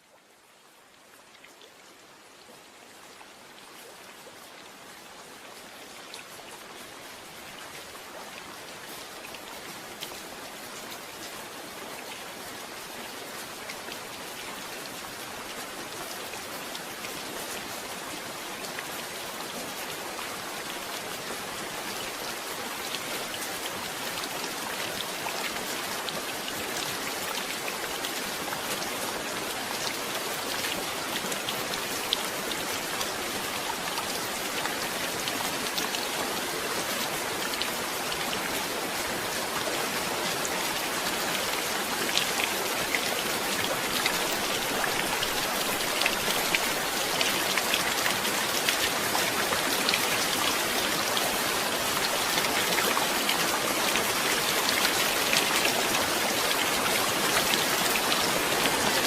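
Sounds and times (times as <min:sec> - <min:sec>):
heavy rain falling: 0:04.9 - 0:59.0
raindrops ticking on a surface: 0:40.8 - 0:59.0.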